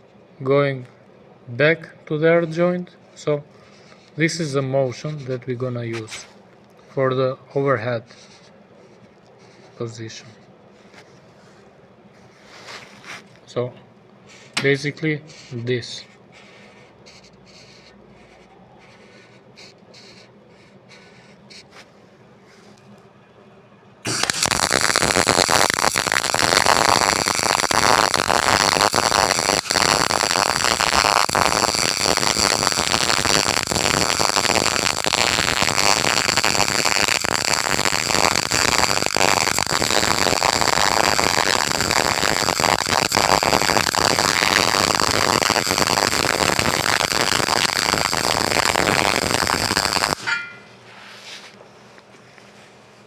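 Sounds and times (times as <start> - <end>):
welding arc crackling: 24.1 - 50.6.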